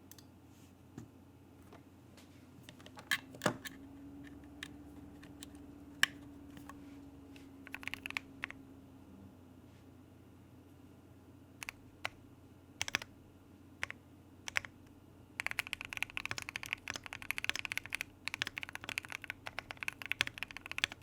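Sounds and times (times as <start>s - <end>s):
mechanical keyboard keystrokes: 7.7s - 8.6s, 11.6s - 12.2s, 12.8s - 13.1s, 13.8s - 14.7s, 15.4s - 21.0s.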